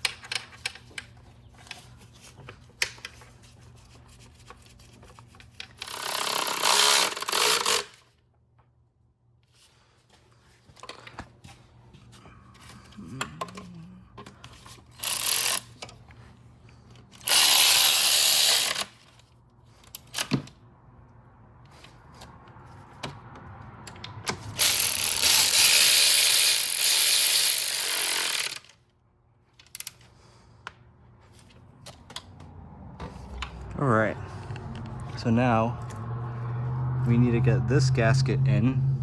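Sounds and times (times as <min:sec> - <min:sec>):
tool clicks and clanks: 0:05.2 - 0:08.0, 0:12.6 - 0:16.0, 0:16.9 - 0:19.0, 0:23.8 - 0:28.8
cordless power tool running: 0:24.6 - 0:28.7.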